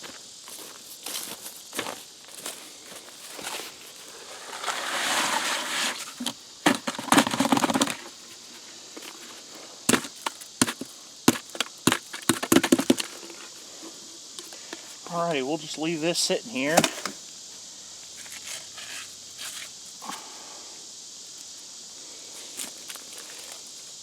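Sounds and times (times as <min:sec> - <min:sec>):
trowel scraping wet concrete: 0:04.2 - 0:06.4.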